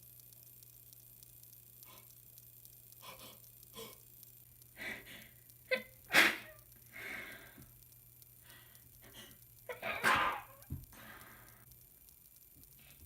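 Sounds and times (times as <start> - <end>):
breathy out-breath: 4.8 - 5.4, 6.2 - 7.7, 8.4 - 11.6
gasping in-breaths: 4.8 - 5.4, 6.2 - 7.7, 8.4 - 11.7
person sneezing: 6.1 - 6.5, 9.7 - 10.6.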